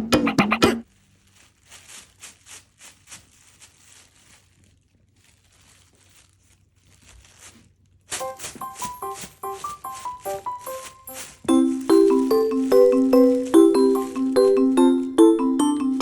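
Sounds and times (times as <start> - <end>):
cat rustling and tapping: 0.8 - 15.1
bell-like background music: 8.2 - 16.0.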